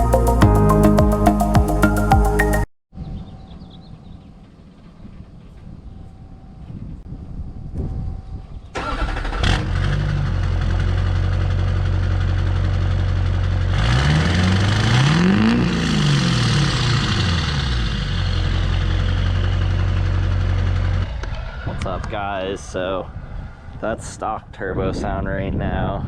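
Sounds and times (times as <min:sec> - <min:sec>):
diesel engine starting: 0:08.7 - 0:22.7
engine revving: 0:08.8 - 0:22.1
diesel engine idling: 0:09.8 - 0:13.8, 0:16.3 - 0:21.7.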